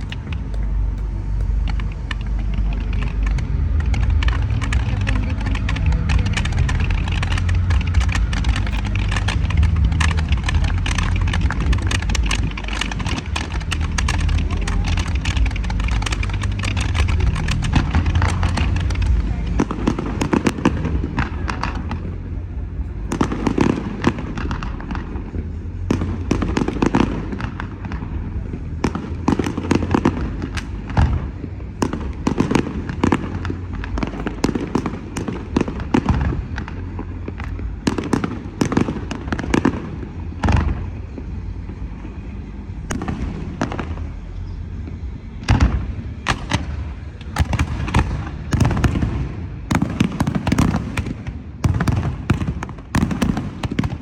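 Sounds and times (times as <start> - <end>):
fireworks bangs and crackles: 0.0 - 54.0
low rumble: 0.0 - 54.0.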